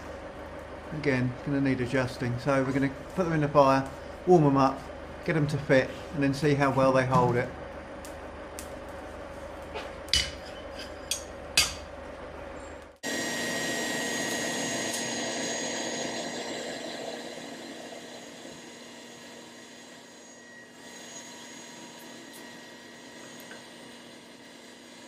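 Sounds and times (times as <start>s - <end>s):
faint high whine: 13.1s - 23.6s.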